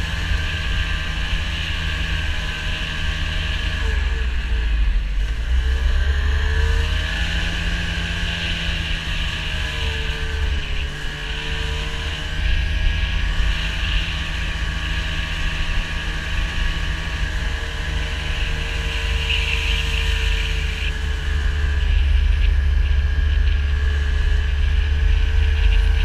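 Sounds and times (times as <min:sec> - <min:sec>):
vehicle engine low rumble: 0:00.0 - 0:26.0.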